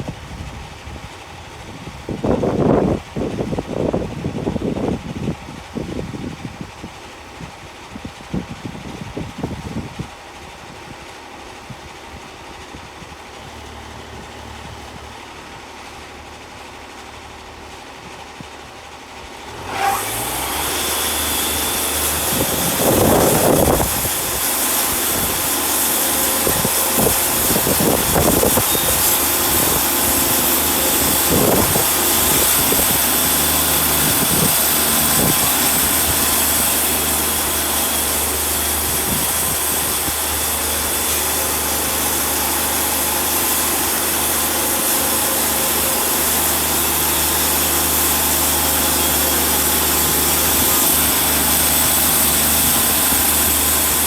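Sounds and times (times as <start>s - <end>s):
sawmill engine running: 0.0s - 54.0s
band blade sawing hiss: 19.5s - 54.0s.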